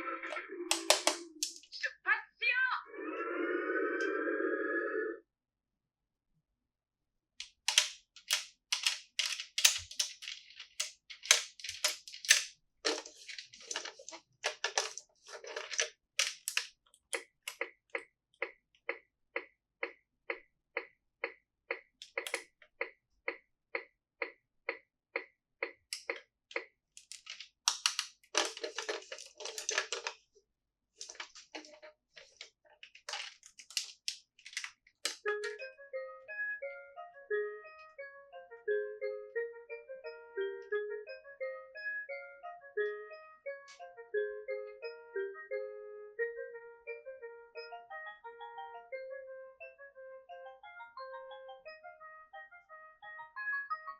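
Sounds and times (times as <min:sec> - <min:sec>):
plastic crackling and clicking: 0:00.7 - 0:01.8, 0:07.4 - 0:18.0, 0:22.0 - 0:22.5, 0:25.9 - 0:30.2, 0:31.0 - 0:35.6.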